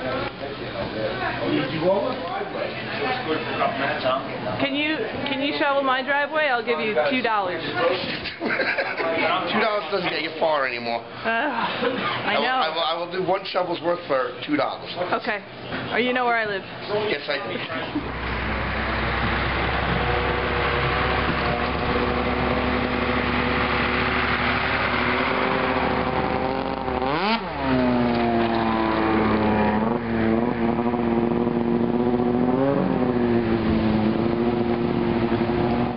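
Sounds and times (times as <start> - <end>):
engine running: 17.0 - 35.9.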